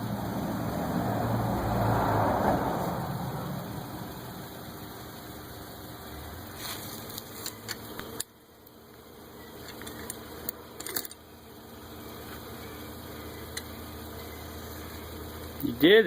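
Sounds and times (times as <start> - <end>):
steady mechanical hum: 0.0 - 16.0
metallic clicks of hand tools: 10.8 - 11.2.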